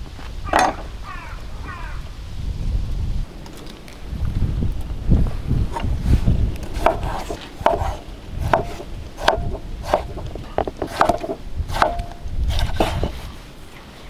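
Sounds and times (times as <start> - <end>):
blade chopping into wood: 5.7 - 13.4.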